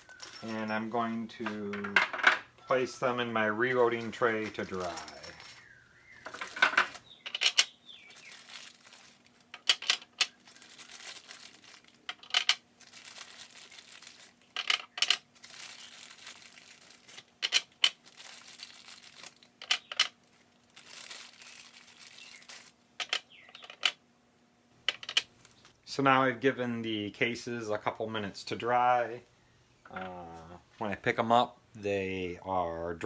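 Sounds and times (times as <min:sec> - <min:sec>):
brass cases clinking: 0:00.0 - 0:02.4, 0:03.9 - 0:20.2
plastic bag rustling: 0:03.9 - 0:22.8.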